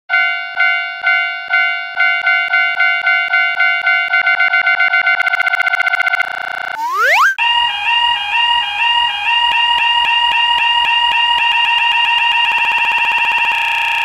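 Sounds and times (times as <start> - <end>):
level crossing alarm bell: 0.1 - 5.6.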